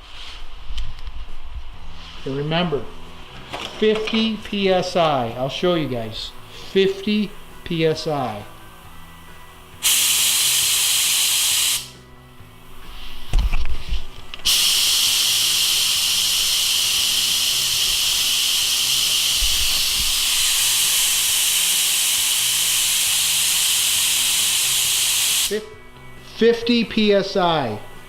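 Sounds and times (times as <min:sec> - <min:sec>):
paint spray gun hissing: 0:09.8 - 0:12.0, 0:14.4 - 0:25.7.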